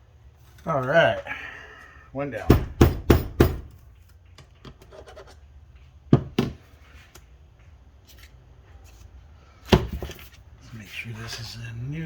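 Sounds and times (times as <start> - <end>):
sharp metal knocks: 2.5 - 3.8.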